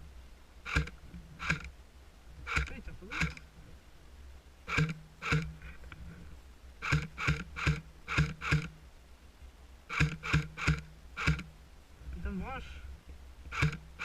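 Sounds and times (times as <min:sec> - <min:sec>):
airsoft gun shots: 0:04.7 - 0:05.6, 0:06.8 - 0:08.7, 0:09.9 - 0:11.5, 0:13.5 - 0:13.9.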